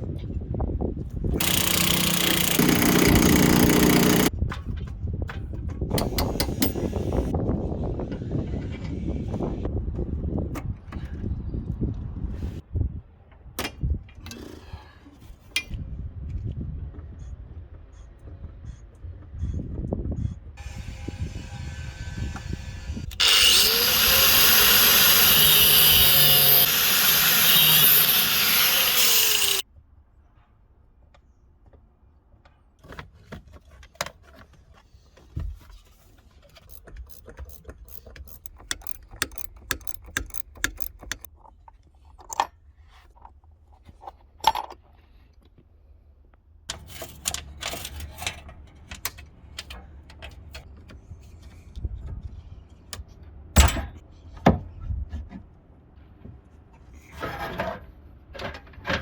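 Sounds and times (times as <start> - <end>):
power tool running: 1.4 - 4.3, 20.6 - 29.6.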